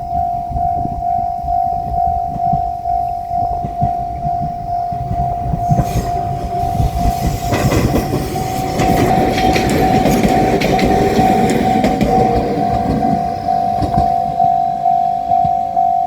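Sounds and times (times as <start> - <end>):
train rumble and wheel clatter: 4.4 - 16.0
level-crossing bell ringing: 6.2 - 16.0.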